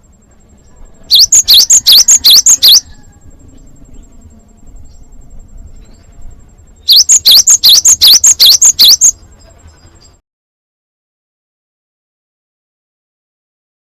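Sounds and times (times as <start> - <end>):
bird calling sharp high notes: 1.0 - 3.0, 6.8 - 9.2.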